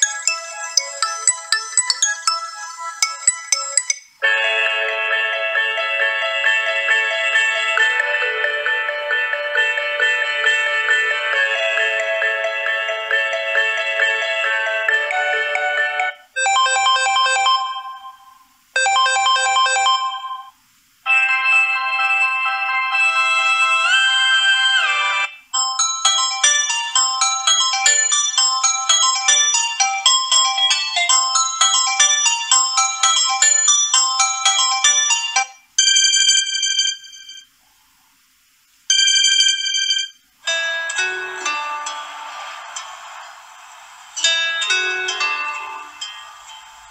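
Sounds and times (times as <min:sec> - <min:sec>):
bright ringtone notes: 0:00.0 - 0:05.1, 0:07.8 - 0:23.8, 0:25.6 - 0:37.5.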